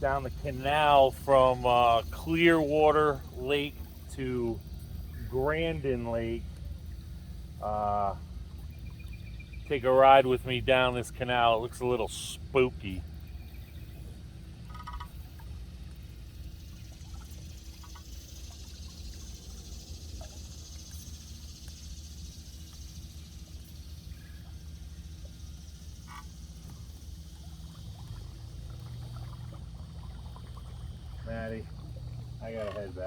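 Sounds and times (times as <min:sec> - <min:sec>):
boat electric motor humming: 0:00.0 - 0:33.0
high steady hiss: 0:00.0 - 0:33.0
frog calls: 0:12.5 - 0:15.8, 0:16.6 - 0:33.0.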